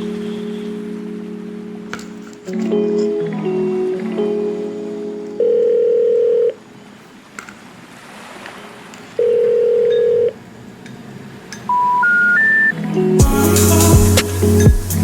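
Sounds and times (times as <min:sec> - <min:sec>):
telephone ringback tone: 0:02.6 - 0:06.7, 0:09.2 - 0:10.4, 0:11.7 - 0:12.8
rising three-tone beeps: 0:11.7 - 0:12.8.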